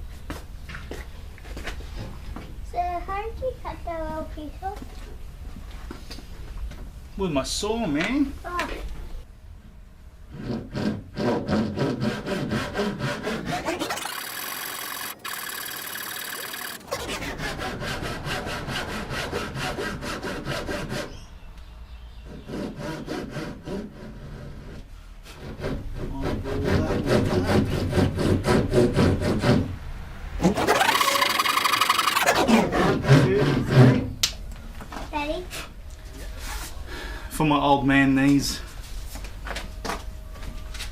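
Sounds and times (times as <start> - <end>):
saw rasping through wood: 10.3 - 21.2, 22.2 - 29.6, 30.4 - 34.1.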